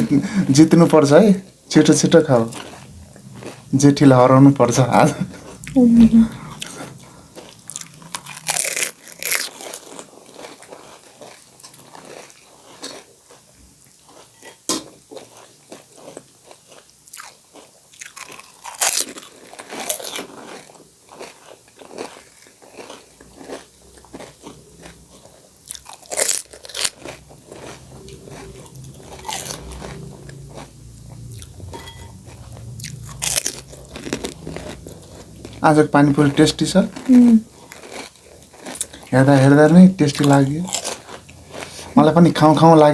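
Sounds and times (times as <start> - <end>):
wet chewing: 2.0 - 14.4, 15.2 - 42.9
crisp shells crunching: 7.4 - 13.1, 17.1 - 25.0, 25.6 - 30.4, 32.8 - 35.5, 36.8 - 39.5, 40.2 - 42.7.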